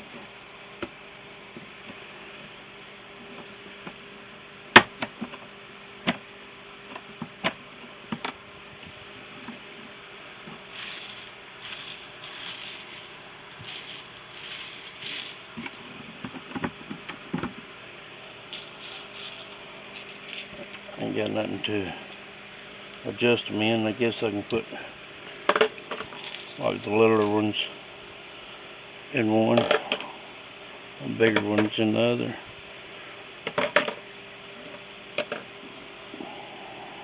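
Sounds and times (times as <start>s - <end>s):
metal hardware clinking and rattling: 10.6s - 15.9s, 18.6s - 21.0s, 25.6s - 27.4s.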